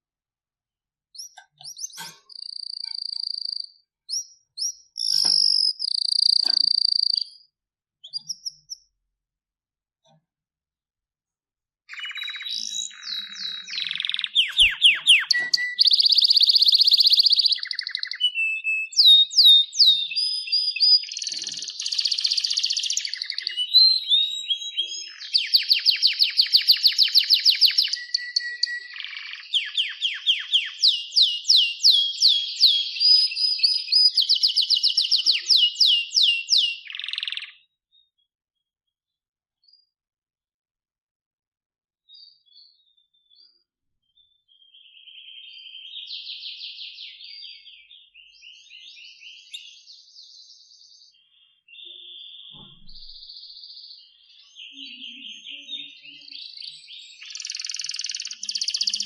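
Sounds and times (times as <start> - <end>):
canary singing trills: 1.1 - 9.0, 11.9 - 38.1, 42.2 - 59.0.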